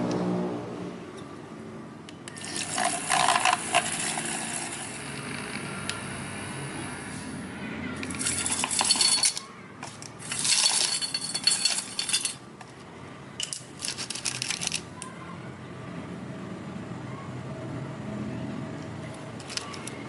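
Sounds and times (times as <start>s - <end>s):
objects clinking against glassware: 8.0s - 9.4s, 10.2s - 12.4s
bright glass ring: 10.2s - 12.4s.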